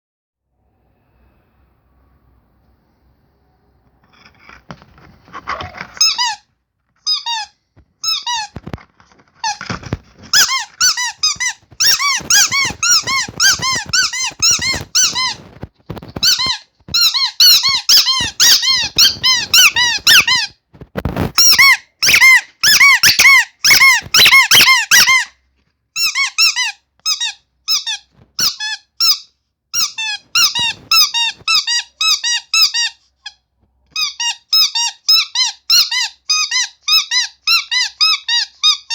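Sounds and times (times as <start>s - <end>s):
squeaky toy squeaking: 5.3s - 38.9s.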